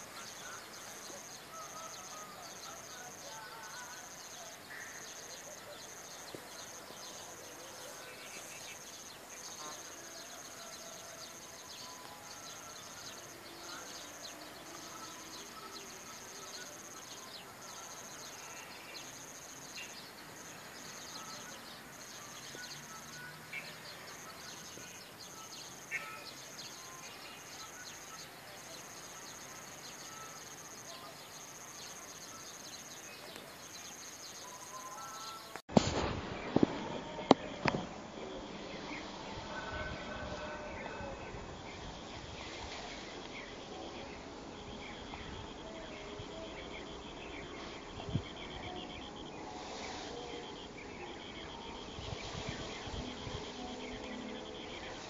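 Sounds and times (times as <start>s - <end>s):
birds chirping: 0.0s - 35.7s.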